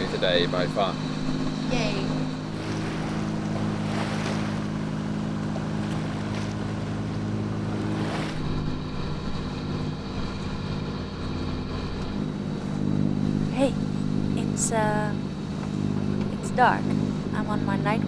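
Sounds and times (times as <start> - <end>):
water rushing past hull: 0.0 - 13.5
boat engine running: 0.0 - 18.0.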